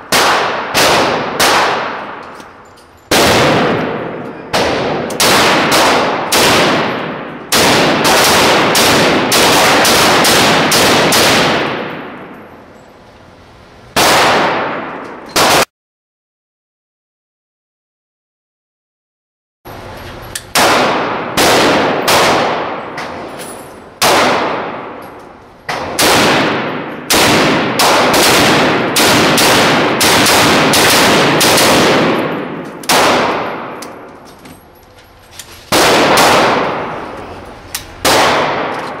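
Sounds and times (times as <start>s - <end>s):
rifle shots with echo: 0.0s - 12.5s, 14.0s - 15.7s, 20.5s - 23.3s, 24.0s - 34.2s, 35.7s - 39.0s.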